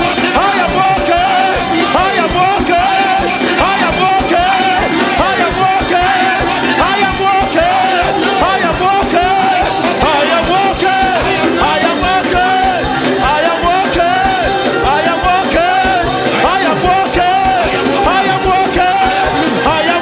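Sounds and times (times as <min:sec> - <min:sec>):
church music with steady beat: 0:00.0 - 0:20.0
many voices praying aloud: 0:00.0 - 0:20.0.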